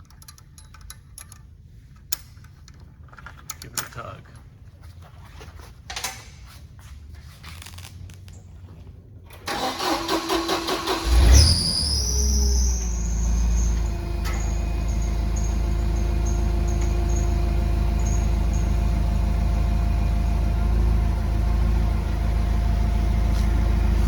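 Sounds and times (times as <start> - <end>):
large engine idling: 9.5 - 24.0.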